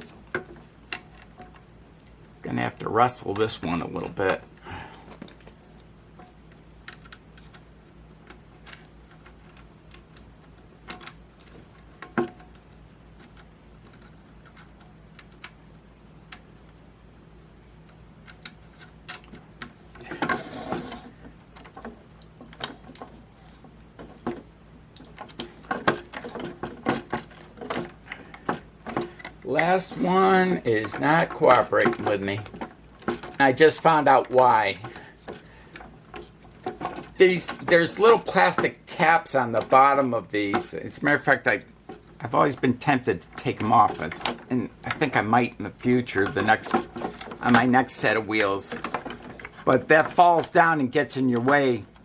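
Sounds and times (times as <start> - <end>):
hands fitting roller onto metal rail: 18.3 - 52.0.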